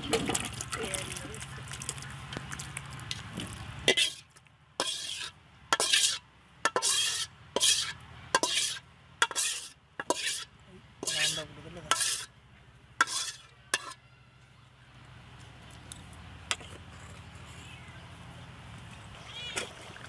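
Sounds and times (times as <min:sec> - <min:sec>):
spoon scraping cooking pot: 0:03.9 - 0:12.3, 0:13.0 - 0:14.0.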